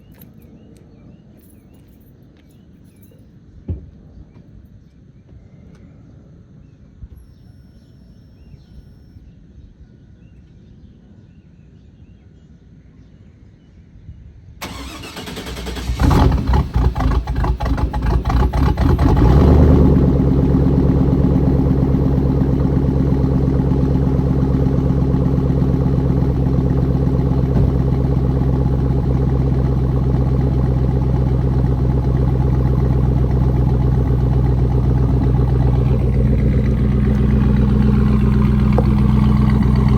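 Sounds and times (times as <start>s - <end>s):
starter cranking engine: 14.6s - 19.7s, 34.0s - 39.9s
engine idling: 14.6s - 39.9s.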